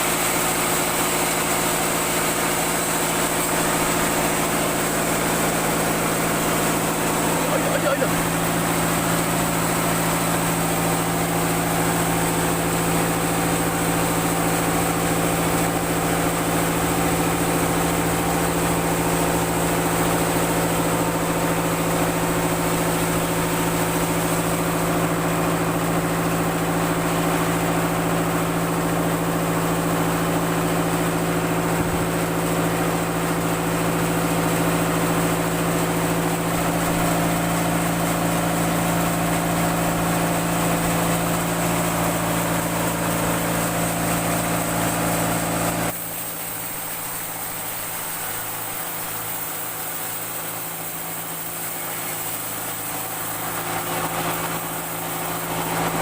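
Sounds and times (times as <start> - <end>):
constant noisy hiss: 0.0 - 29.3, 44.1 - 56.0
sawmill machinery drone: 0.0 - 56.0.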